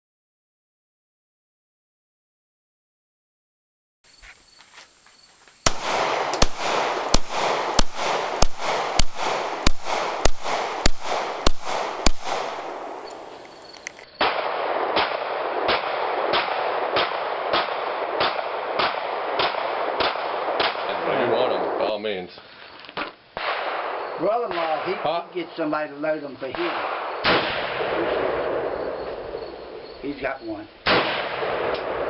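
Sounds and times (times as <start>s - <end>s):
gunshots with echo: 5.7s - 21.9s, 23.4s - 25.4s, 26.5s - 29.9s, 30.8s - 32.0s.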